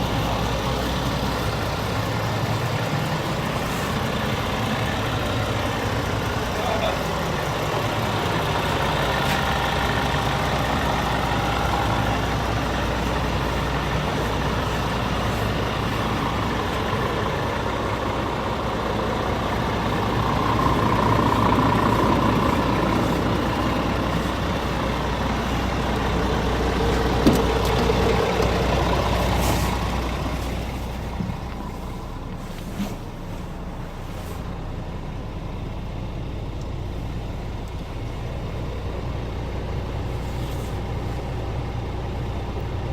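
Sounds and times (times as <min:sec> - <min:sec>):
truck diesel engine running: 0:00.0 - 0:42.9.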